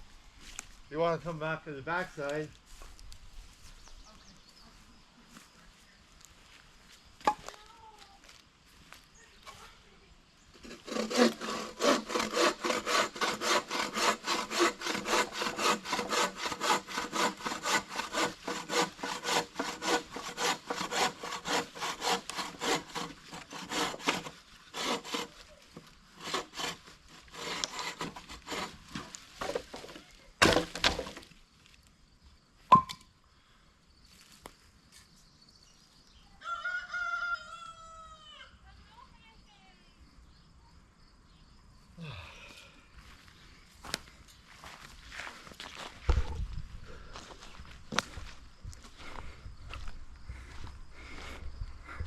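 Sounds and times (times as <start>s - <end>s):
hand saw cutting branch: 10.6s - 31.2s.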